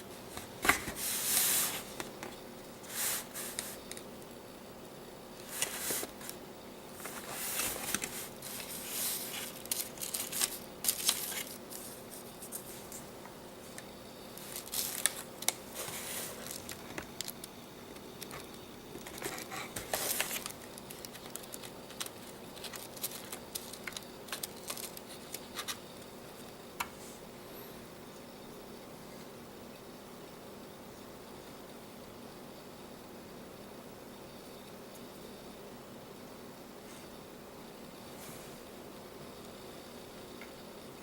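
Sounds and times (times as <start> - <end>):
packaging crinkling and tearing: 7.0 - 11.8, 14.4 - 17.5, 18.2 - 25.8.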